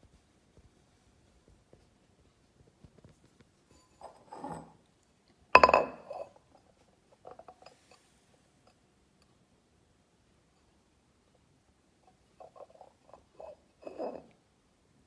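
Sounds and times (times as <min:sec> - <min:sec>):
soft scrape of bowls: 0:03.7 - 0:04.9, 0:07.2 - 0:08.7, 0:12.1 - 0:14.4
ceramic bowls clinking: 0:03.8 - 0:04.8, 0:05.6 - 0:06.4, 0:12.4 - 0:14.4.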